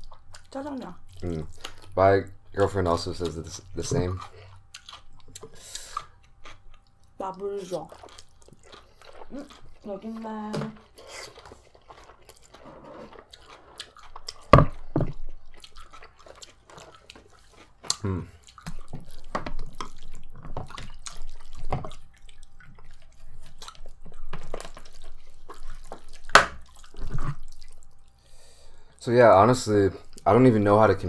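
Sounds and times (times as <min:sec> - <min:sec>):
wet chewing smacks: 0:00.0 - 0:28.2.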